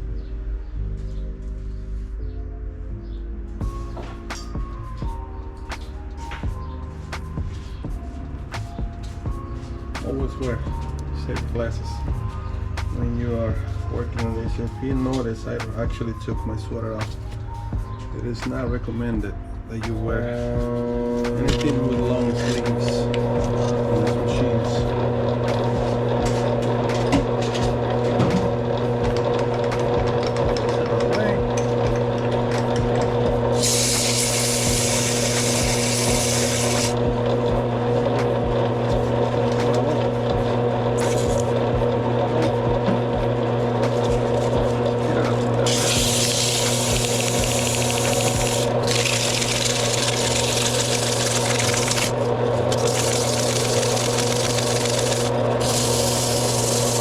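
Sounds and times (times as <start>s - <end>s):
lathe motor hum: 20.2s - 57.0s
sandpaper scraping metal: 54.4s - 57.0s.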